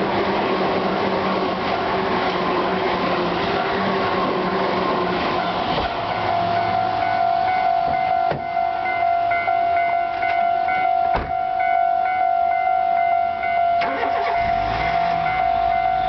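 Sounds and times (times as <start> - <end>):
low train rumble: 0.0 - 16.0
level crossing warning bell: 2.5 - 16.0.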